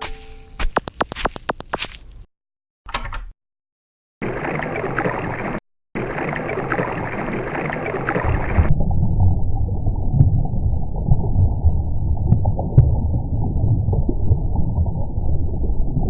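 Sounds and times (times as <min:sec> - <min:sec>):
gurgling water-like noise: 0:04.2 - 0:16.0.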